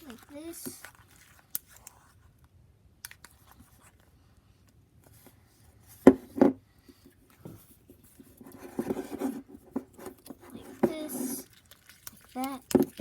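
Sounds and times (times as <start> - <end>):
utensil mixing slime in a bowl: 0.0 - 5.4, 7.2 - 13.0
faint scraping: 7.4 - 11.5.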